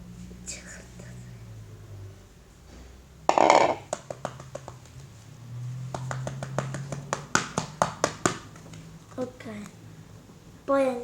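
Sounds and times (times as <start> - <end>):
hands tapping a container: 3.3 - 4.8.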